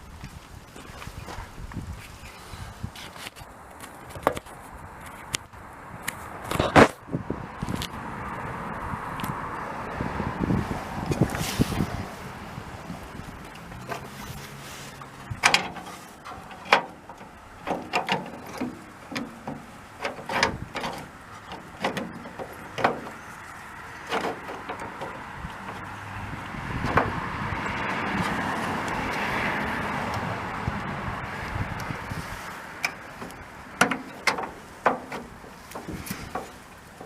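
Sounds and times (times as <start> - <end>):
steady rushing noise: 0.0 - 37.0
metal clicks and knocks: 15.0 - 25.9, 32.8 - 37.0.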